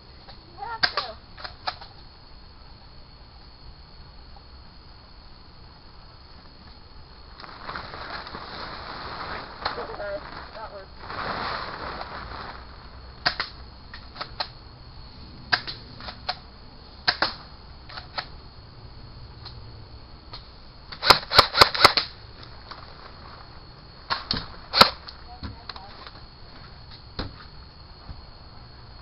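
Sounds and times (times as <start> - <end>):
airsoft gun shots: 13.2 - 13.6, 17.0 - 18.3, 21.0 - 22.2, 24.1 - 25.0.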